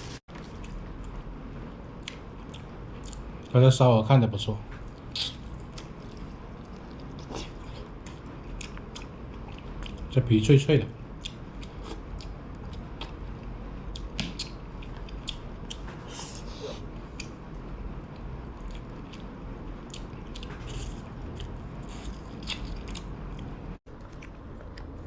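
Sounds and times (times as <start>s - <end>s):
person chewing crisp food: 2.0s - 3.5s, 4.9s - 10.1s, 11.2s - 17.4s, 18.2s - 25.0s.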